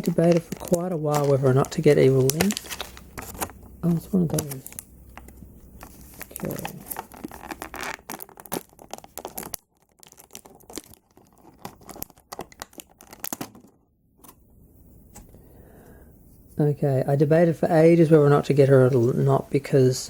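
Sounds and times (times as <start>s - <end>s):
packaging tearing and crinkling: 0.0s - 13.8s.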